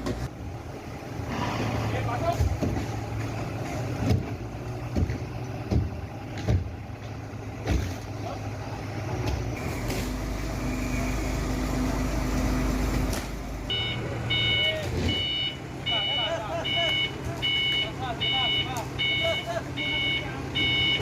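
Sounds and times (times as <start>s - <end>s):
forklift engine running: 0.0s - 21.0s
reversing beeps: 13.7s - 21.0s.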